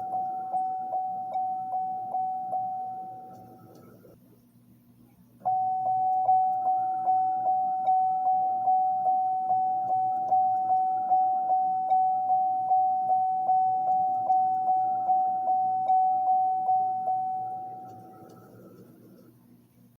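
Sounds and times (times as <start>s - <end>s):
electronic door-ajar chime: 5.4s - 18.7s.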